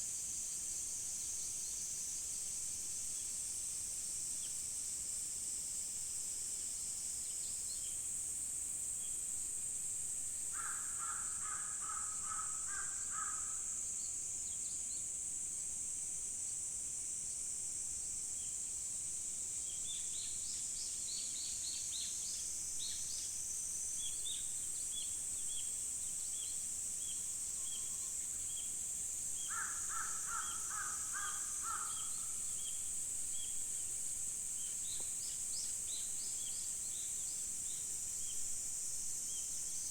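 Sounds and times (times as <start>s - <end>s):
insects droning: 0.0s - 39.9s
crow cawing: 10.6s - 13.6s, 29.5s - 32.2s.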